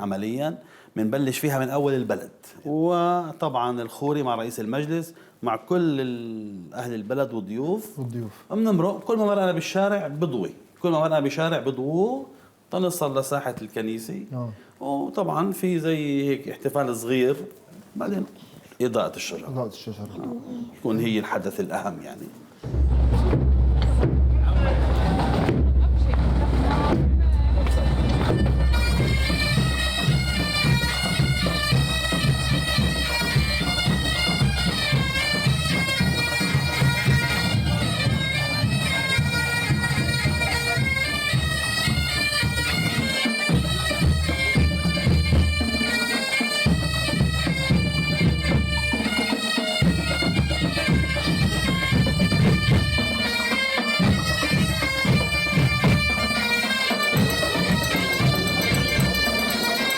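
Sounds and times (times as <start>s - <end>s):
bagpipes playing a tune: 27.6s - 59.9s.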